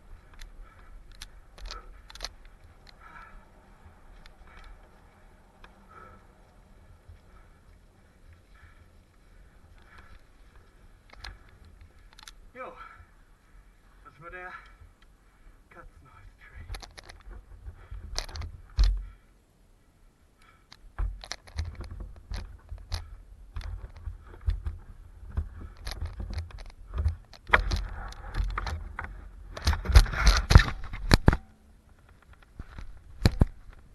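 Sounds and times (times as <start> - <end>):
mountain bike clattering and rattling: 20.9 - 33.9.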